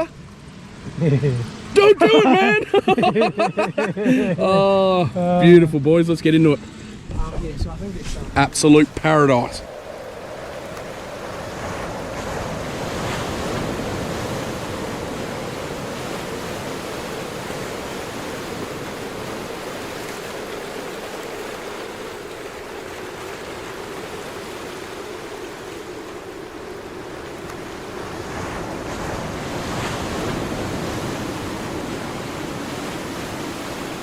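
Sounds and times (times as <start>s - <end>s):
surf washing on beach: 0.0s - 34.0s.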